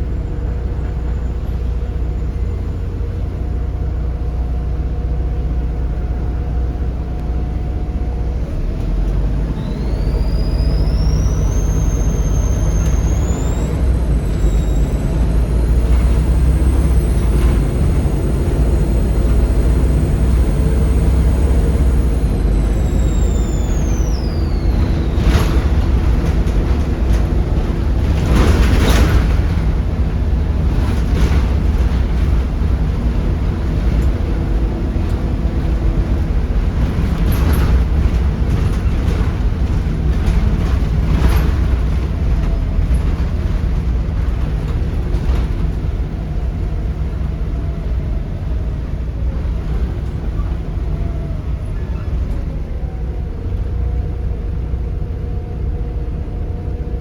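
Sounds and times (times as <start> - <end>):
bus engine rumble: 0.0 - 57.0
faint steady whine: 9.6 - 27.6.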